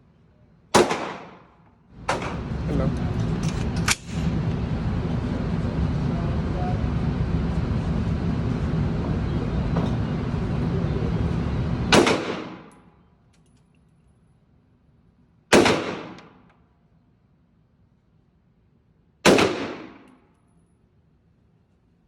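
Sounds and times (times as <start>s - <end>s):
gunshots with echo: 0.8s - 1.5s, 11.9s - 12.7s, 15.5s - 16.4s, 19.3s - 20.1s
steady rushing noise: 2.0s - 12.0s.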